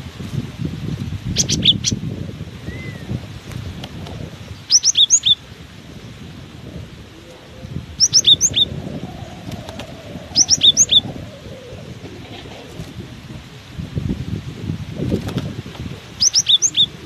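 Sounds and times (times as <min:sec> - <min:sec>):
wind rumble on microphone: 0:00.0 - 0:17.0
bird singing high chirps: 0:01.4 - 0:02.0, 0:04.7 - 0:05.4, 0:08.0 - 0:11.4, 0:16.2 - 0:17.0.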